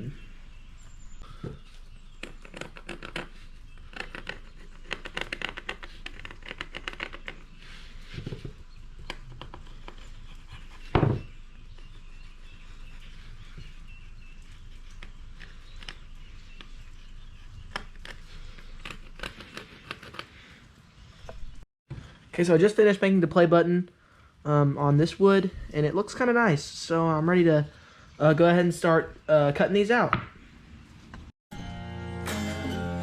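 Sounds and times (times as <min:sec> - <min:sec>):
scratchy drawing on wood: 0:02.2 - 0:16.7.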